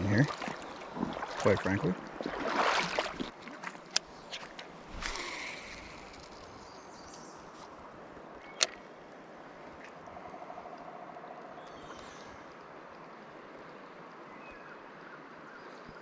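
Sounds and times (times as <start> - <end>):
river water running: 0.0 - 15.6
brief fast rattle: 4.9 - 6.6.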